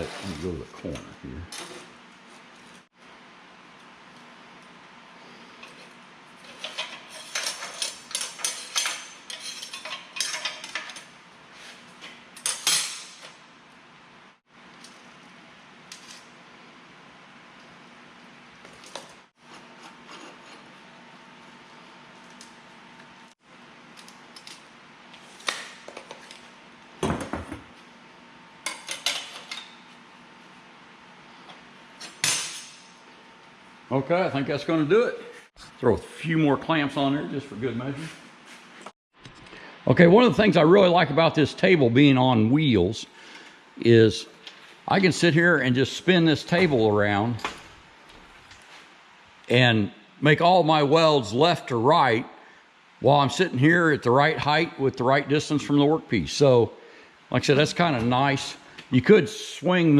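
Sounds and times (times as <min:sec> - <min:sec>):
workshop background hiss: 0:00.0 - 0:02.9, 0:05.0 - 0:13.7, 0:28.6 - 0:59.9
steel parts clattering on metal table: 0:06.4 - 0:11.1, 0:12.4 - 0:13.3, 0:32.1 - 0:32.8.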